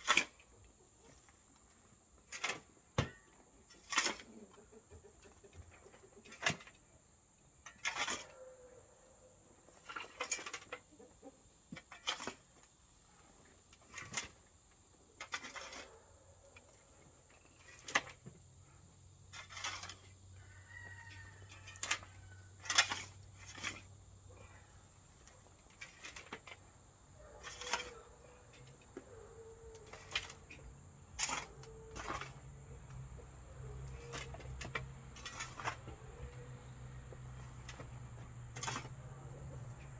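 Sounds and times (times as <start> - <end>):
shovel knocking and scraping dirt: 0.0 - 0.5, 1.1 - 6.9, 7.6 - 8.4, 9.7 - 11.0, 11.6 - 18.5, 19.2 - 39.9.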